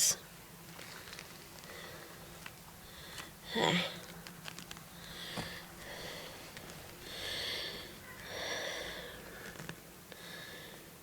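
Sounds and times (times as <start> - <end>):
person breathing: 1.6 - 4.1, 4.9 - 11.0.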